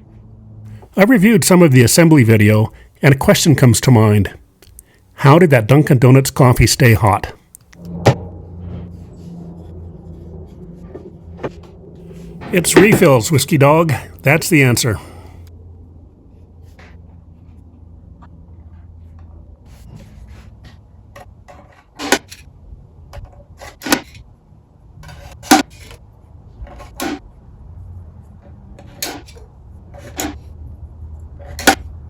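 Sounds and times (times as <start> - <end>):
low steady hum: 0.0 - 25.4.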